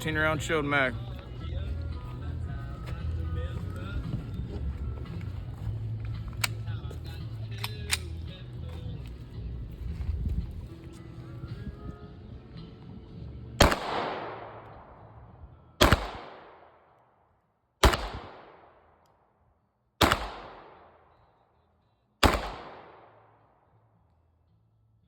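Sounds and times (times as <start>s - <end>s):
pistol shots echoing: 13.6s - 15.2s, 15.8s - 16.9s, 17.8s - 19.0s, 20.0s - 21.2s, 22.2s - 23.4s.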